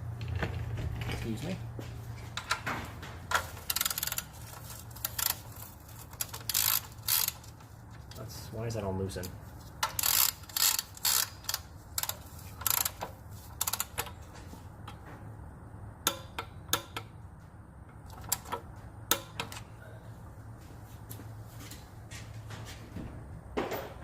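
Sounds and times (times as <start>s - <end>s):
steady low hum: 0.0s - 24.0s
metallic ratchet clicks: 3.7s - 4.3s, 5.0s - 7.5s, 9.8s - 13.0s.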